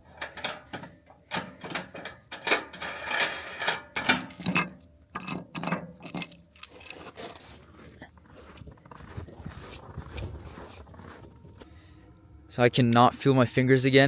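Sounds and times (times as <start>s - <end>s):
metal gear clinking and clattering: 1.4s - 7.4s.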